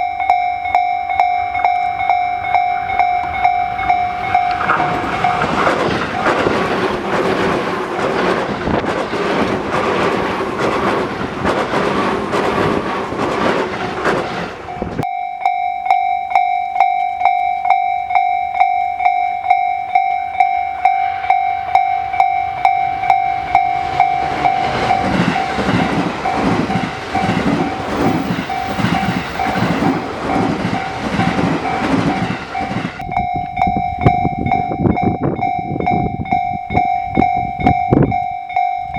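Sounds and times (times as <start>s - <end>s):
level crossing bell dinging: 0.0s - 6.7s, 14.9s - 25.6s, 32.6s - 38.9s
train wheels on rail: 0.0s - 15.1s, 15.9s - 38.9s
wheels clattering over rail joints: 1.4s - 15.0s, 20.0s - 34.4s.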